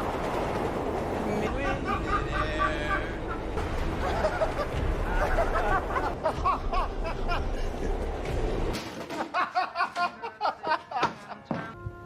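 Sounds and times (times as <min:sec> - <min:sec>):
steady low rumble: 0:00.0 - 0:08.8
people laughing and talking: 0:01.4 - 0:08.2, 0:09.4 - 0:11.7.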